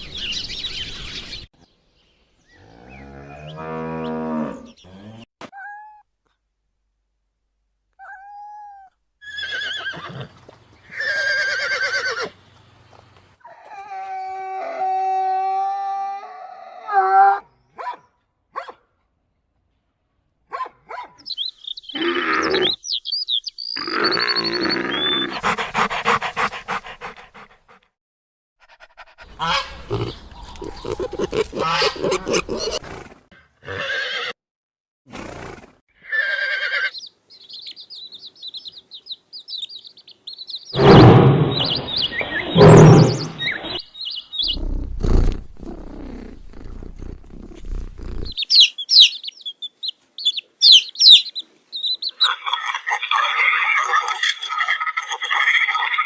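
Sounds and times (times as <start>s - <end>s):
long steady animal call: 21.3s - 23.1s, 23.7s - 27.8s, 45.8s - 56.0s
rough noisy animal cries: 29.4s - 32.8s
high chirps: 37.0s - 44.6s, 48.3s - 52.3s.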